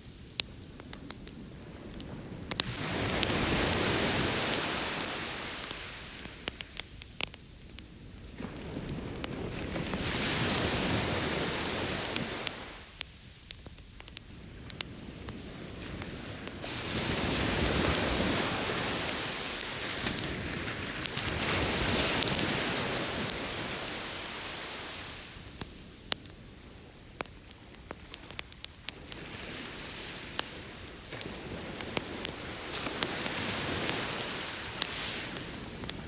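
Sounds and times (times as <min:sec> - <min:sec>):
bonfire crackling and popping: 0:00.0 - 0:36.0
ocean waves washing in: 0:01.4 - 0:06.6, 0:08.3 - 0:12.9, 0:14.9 - 0:25.6, 0:28.2 - 0:36.0.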